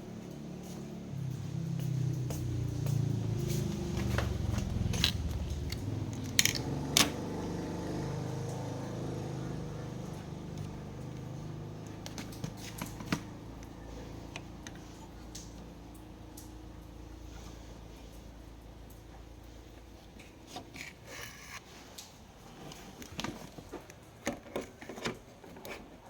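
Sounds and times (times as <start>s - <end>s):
small hand tools clicking: 4.6s - 7.2s.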